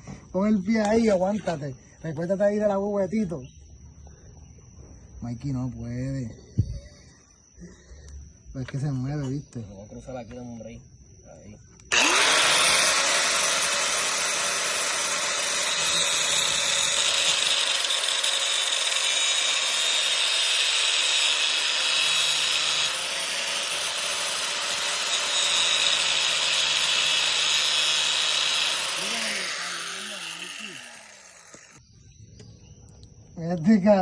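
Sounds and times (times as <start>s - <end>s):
angle grinder motor whine: 11.8s - 31.8s
grinder disc hissing on metal: 11.9s - 31.8s.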